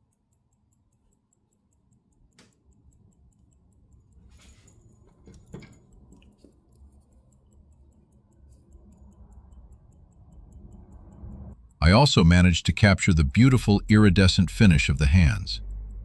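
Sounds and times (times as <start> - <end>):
pocket watch ticking: 0.0 - 16.0
soft handling knocks and rustles: 4.3 - 6.6.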